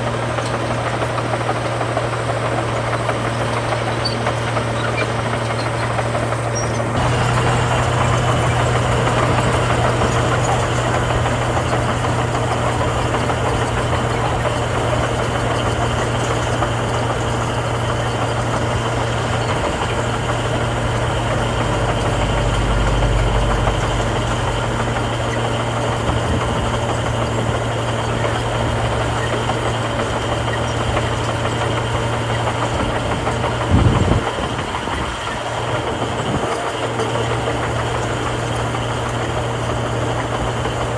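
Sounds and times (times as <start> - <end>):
heavy diesel engine running: 0.0 - 40.9
deeper rumble: 6.8 - 16.0, 18.5 - 36.5.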